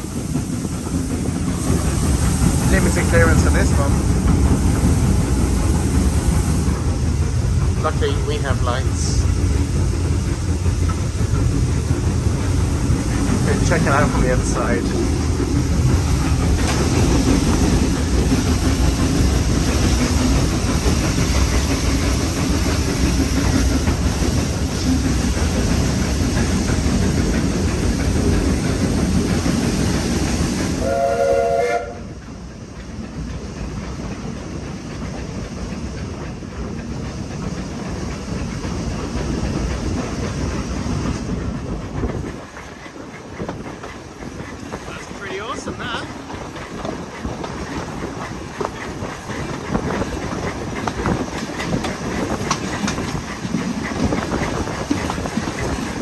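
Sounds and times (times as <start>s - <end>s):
train wheels rumbling clickety-clack: 0.0s - 56.0s
train horn blast: 30.8s - 32.1s.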